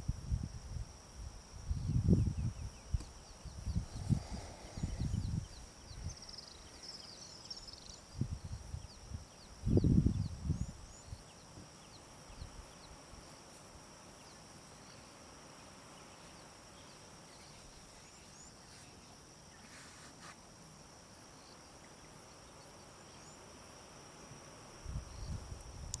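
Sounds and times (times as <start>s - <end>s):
insect trill: 0.0s - 26.0s
faint bird chirps: 1.7s - 13.0s.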